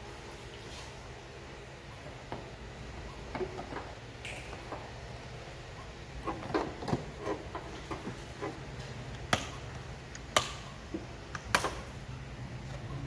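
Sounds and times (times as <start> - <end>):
plastic clips snapping: 9.2 - 10.6.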